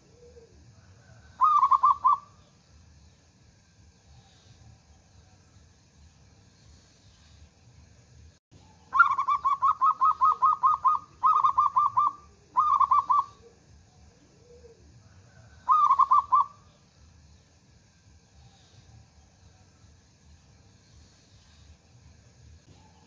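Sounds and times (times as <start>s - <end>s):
dove cooing: 0.0s - 2.4s, 8.6s - 16.6s.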